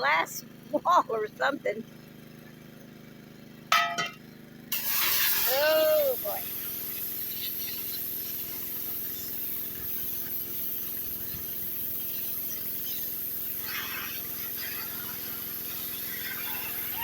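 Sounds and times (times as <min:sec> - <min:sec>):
pressure washer engine running: 0:00.0 - 0:17.0
water spray hissing: 0:04.7 - 0:17.0.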